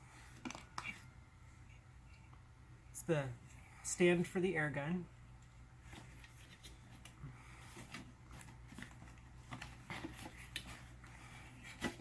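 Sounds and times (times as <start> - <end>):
packaging rustling: 5.9 - 12.0.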